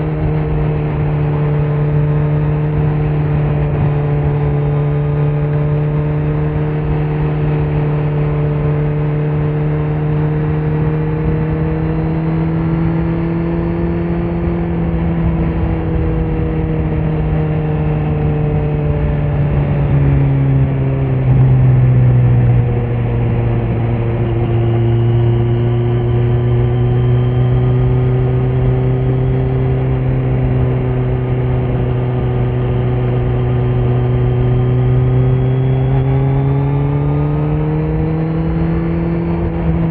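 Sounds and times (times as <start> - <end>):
motorcycle engine cruising: 0.0 - 39.9.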